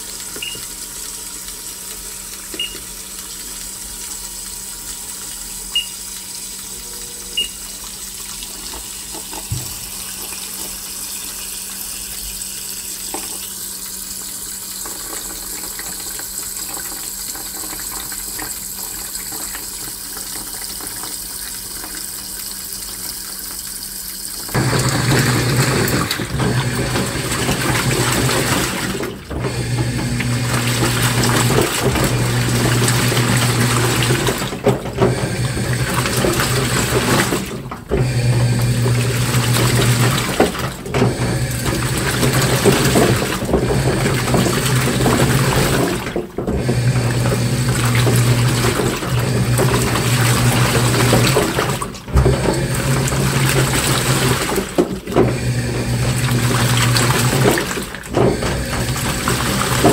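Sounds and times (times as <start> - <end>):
water running and sloshing: 0.0 - 59.9
low motor hum: 29.2 - 40.3.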